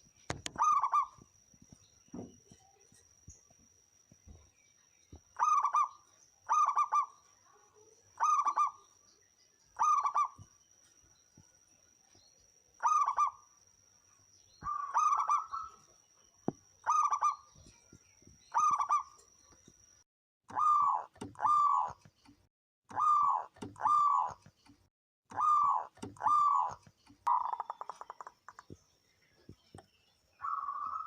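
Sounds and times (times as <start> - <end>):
faint high-pitched whine: 0.0 - 31.0
dove cooing: 0.4 - 1.3, 5.4 - 7.2, 8.2 - 8.8, 9.8 - 10.4, 12.8 - 13.4, 14.6 - 15.8, 16.8 - 17.5, 18.5 - 19.1, 20.5 - 22.0, 22.9 - 24.4, 25.3 - 28.3.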